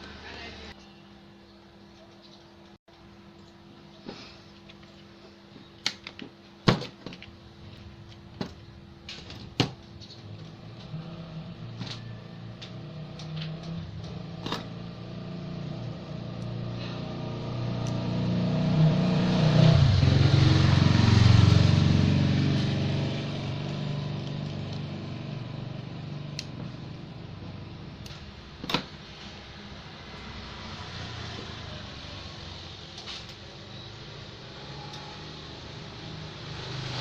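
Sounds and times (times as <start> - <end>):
motor vehicle passing: 10.3 - 27.6, 29.2 - 32.9, 34.4 - 37.0.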